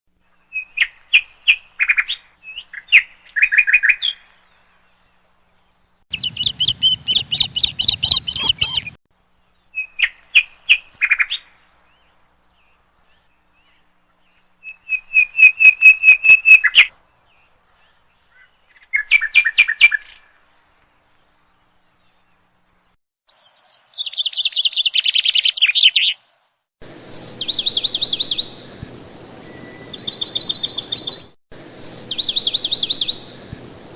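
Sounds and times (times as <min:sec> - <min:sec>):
birds chirping: 0:06.1 - 0:10.2, 0:26.8 - 0:33.9.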